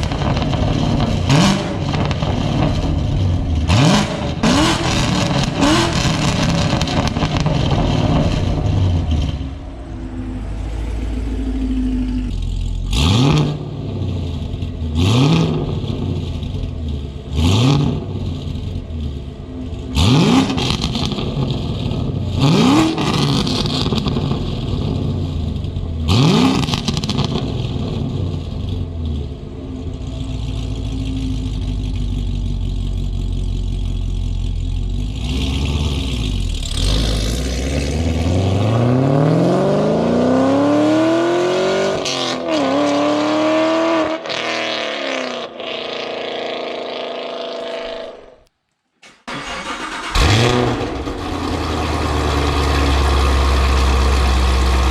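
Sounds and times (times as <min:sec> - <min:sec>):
car engine idling: 0:00.0 - 0:15.0, 0:18.0 - 0:20.0, 0:26.7 - 0:36.9, 0:49.3 - 0:54.9
car engine throttle blips: 0:00.0 - 0:41.2.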